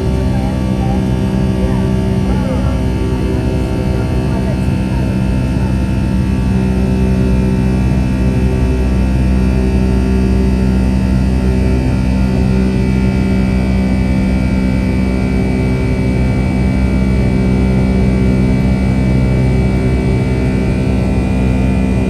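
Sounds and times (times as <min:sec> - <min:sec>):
jet engines droning in cabin: 0:00.0 - 0:22.0.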